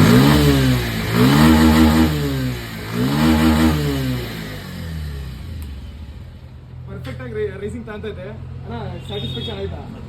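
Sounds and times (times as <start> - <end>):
motorcycle engine revving: 0.0 - 6.7.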